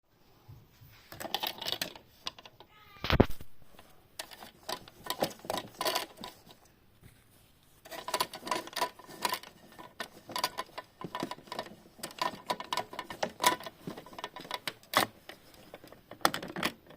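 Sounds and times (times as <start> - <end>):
toy washing machine clicking: 4.2 - 6.6, 7.9 - 16.9.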